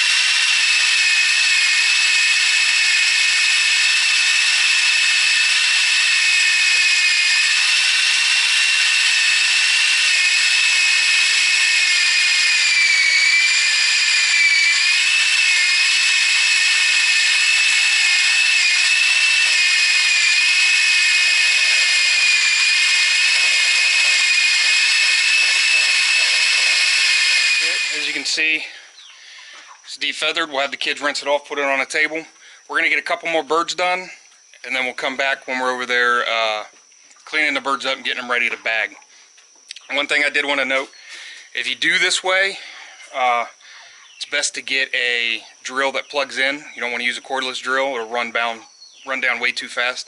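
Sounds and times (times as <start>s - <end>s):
electric drill whining: 0.0s - 29.1s.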